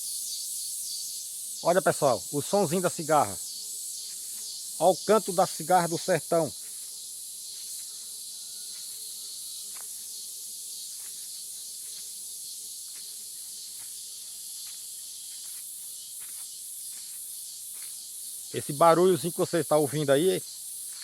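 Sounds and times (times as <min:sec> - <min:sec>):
cicada buzzing: 0:00.0 - 0:21.0.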